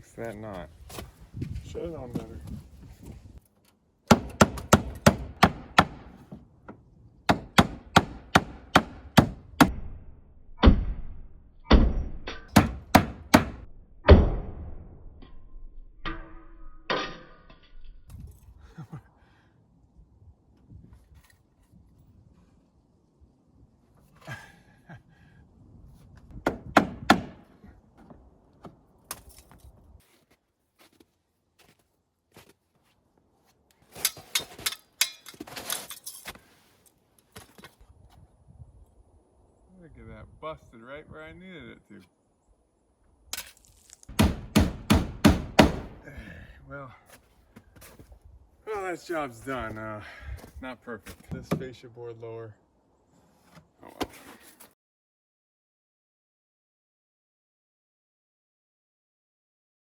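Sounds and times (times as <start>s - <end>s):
hammer striking nails into wood: 4.1s - 6.4s, 7.3s - 9.8s, 11.7s - 14.2s, 26.4s - 27.4s, 44.1s - 46.0s.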